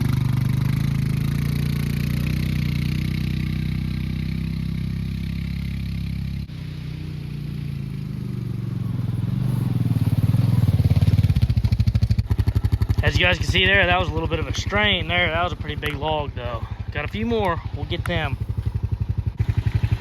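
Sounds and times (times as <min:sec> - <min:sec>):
four-wheeler engine pulling hard: 0:00.0 - 0:20.0.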